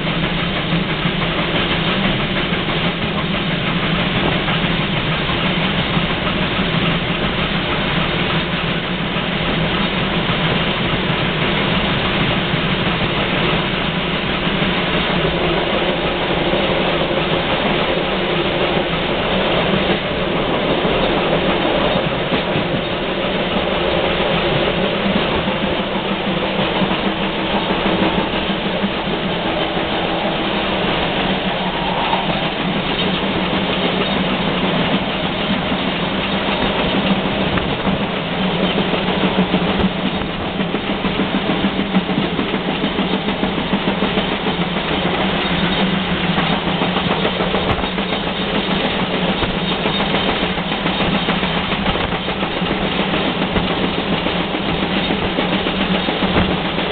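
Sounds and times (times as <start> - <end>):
train rolling along track: 0.0 - 56.9.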